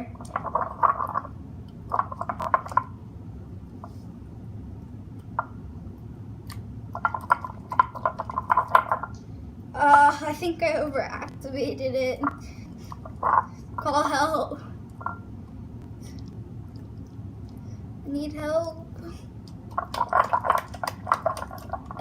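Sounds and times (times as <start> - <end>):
slime squelching: 0.0 - 3.0, 6.4 - 9.2, 12.0 - 15.3, 18.6 - 22.0.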